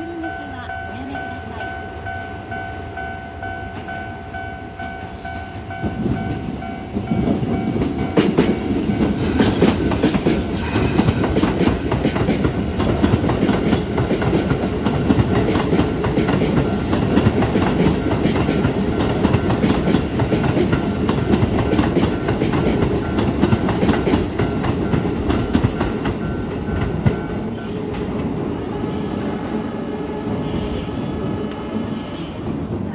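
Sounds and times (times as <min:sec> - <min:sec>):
crossing warning bell: 0:00.0 - 0:28.2
train wheels clattering over rails: 0:04.8 - 0:29.1.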